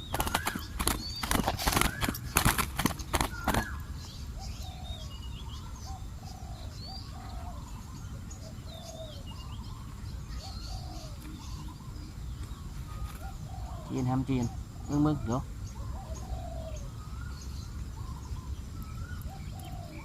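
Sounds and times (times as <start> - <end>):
sharp clicks: 0.0 - 3.8
doves cooing: 0.0 - 20.0
small birds chirping: 0.0 - 20.0.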